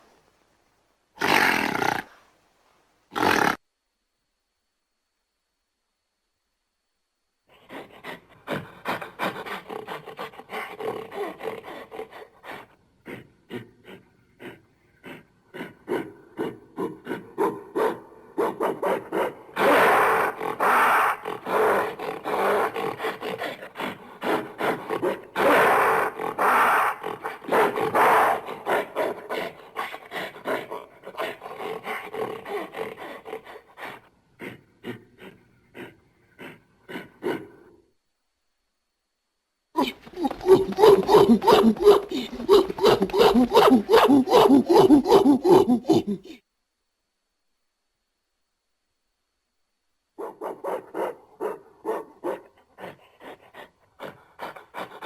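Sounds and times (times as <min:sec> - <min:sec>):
gorilla hooting: 0:18.8 - 0:33.5, 0:39.8 - 0:46.4.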